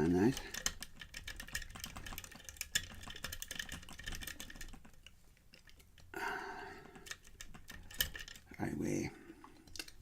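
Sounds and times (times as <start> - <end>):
lock pick clicking against pins: 0.2 - 6.2, 6.8 - 8.5.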